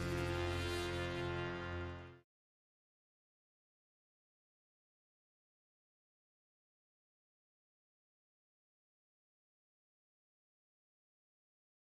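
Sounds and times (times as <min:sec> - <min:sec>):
background music: 0:00.0 - 0:02.2.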